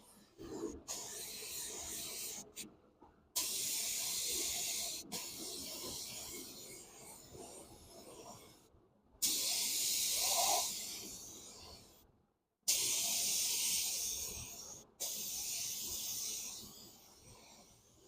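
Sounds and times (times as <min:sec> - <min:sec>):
spray paint hissing: 0:00.9 - 0:02.6, 0:03.4 - 0:06.7, 0:09.2 - 0:11.9, 0:12.7 - 0:17.8.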